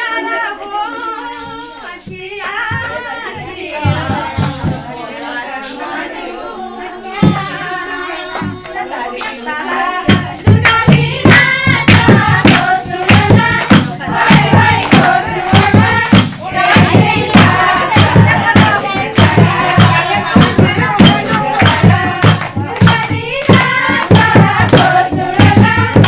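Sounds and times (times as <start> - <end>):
voices singing folk song: 0.0 - 26.0
sharp drum strikes: 3.8 - 5.1, 7.2 - 8.6, 10.0 - 26.0.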